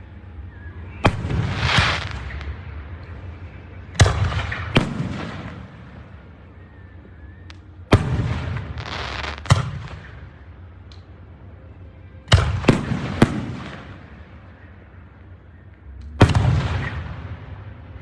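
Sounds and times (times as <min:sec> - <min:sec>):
fireworks booming: 0:01.0 - 0:03.2, 0:03.8 - 0:06.3, 0:07.9 - 0:10.2, 0:16.2 - 0:17.8
fireworks trailing hiss: 0:01.1 - 0:02.6.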